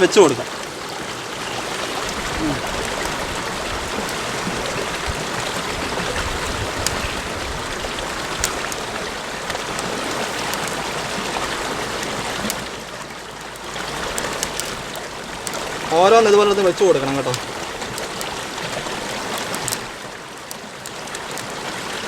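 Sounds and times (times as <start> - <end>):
stream flowing over stones: 0.0 - 22.0
light clicks: 13.4 - 15.8, 19.1 - 21.5.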